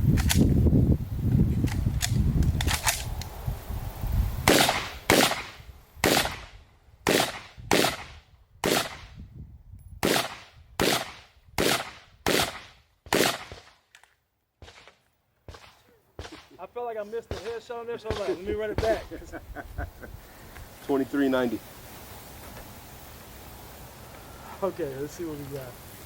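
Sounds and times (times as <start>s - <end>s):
gunshots: 4.5s - 9.1s, 10.0s - 13.8s, 14.6s - 16.6s, 17.3s - 19.1s.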